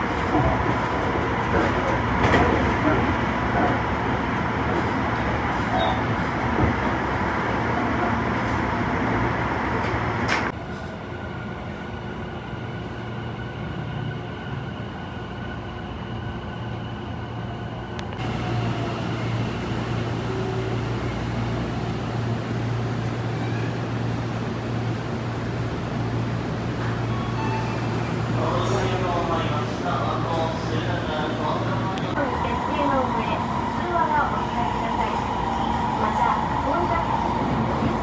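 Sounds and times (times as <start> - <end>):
electric train wheels rumbling: 18.1 - 38.0.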